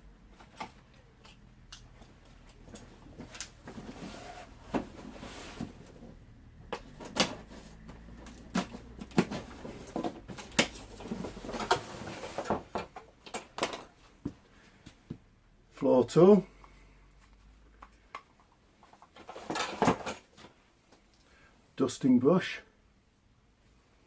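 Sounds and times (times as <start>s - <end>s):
vacuum attachments clicking and knocking: 6.7s - 13.9s.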